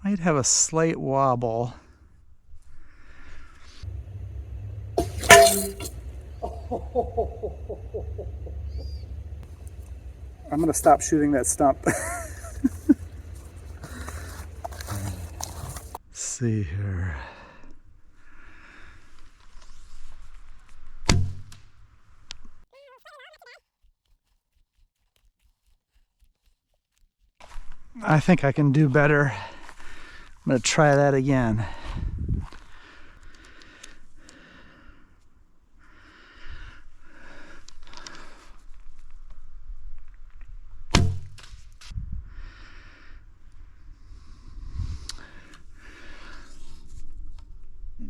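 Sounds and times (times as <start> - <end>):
bow shot: 21.0 - 21.7
person breathing: 44.0 - 46.7.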